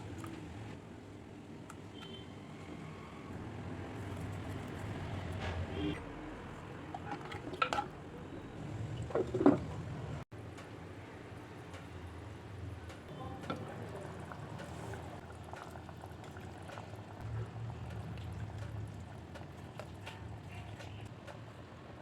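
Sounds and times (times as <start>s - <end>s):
curry bubbling in a pan: 13.6s - 20.5s.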